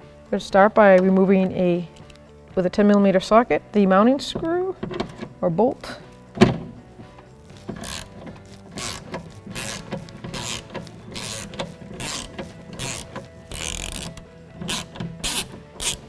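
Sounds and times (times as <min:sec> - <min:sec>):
ratchet wrench clicking: 0:07.6 - 0:16.0.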